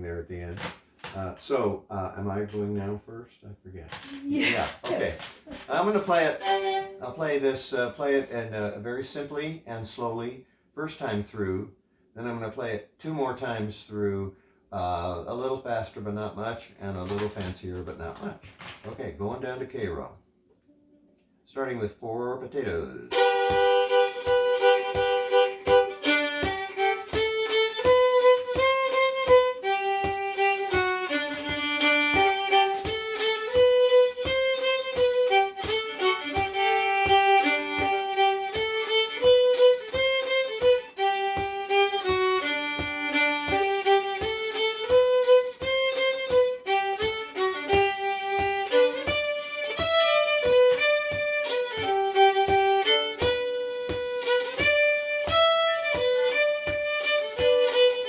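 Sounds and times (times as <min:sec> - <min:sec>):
fiddle playing slow tune: 0:05.6 - 0:10.4, 0:23.0 - 0:58.0
even tapping: 0:23.1 - 0:58.0.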